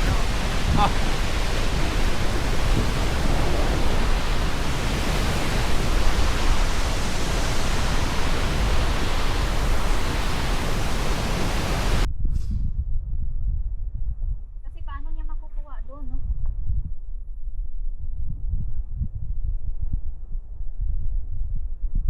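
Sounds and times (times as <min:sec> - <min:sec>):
waterfall rushing: 0:00.0 - 0:12.1.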